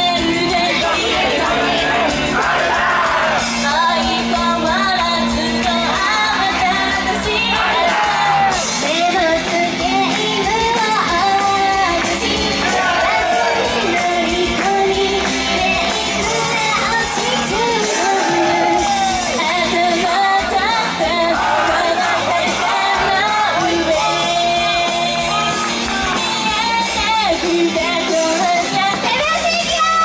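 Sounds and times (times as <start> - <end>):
female voices singing: 0.0 - 30.0
upbeat pop backing music: 0.0 - 30.0
crowd shouts: 0.6 - 3.8, 5.8 - 9.1, 12.4 - 14.1, 15.2 - 27.1.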